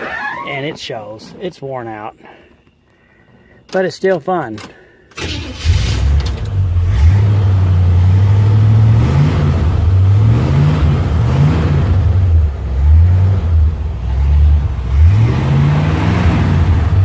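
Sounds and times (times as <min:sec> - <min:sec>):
car engine accelerating: 0:05.2 - 0:17.0.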